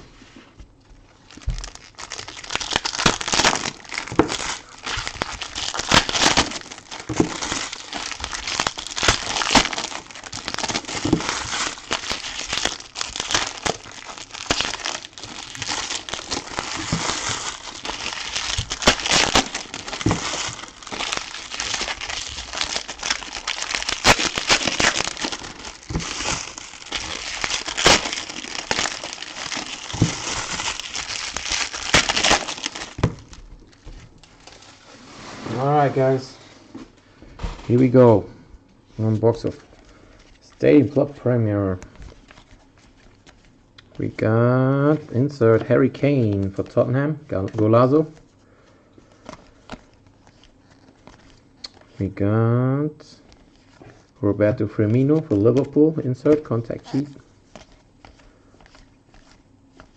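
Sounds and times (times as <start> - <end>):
wrappers crinkling and tearing: 1.2 - 34.8, 39.0 - 44.2, 49.0 - 52.1, 53.1 - 59.9.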